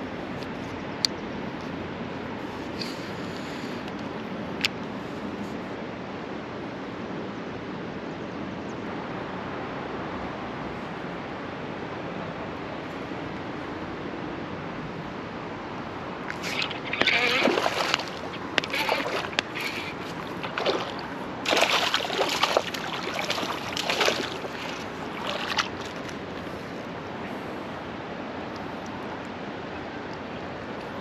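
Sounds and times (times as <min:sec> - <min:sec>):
hiss of moving water: 0:02.4 - 0:03.9, 0:16.3 - 0:27.7
creek water rushing: 0:09.0 - 0:31.0.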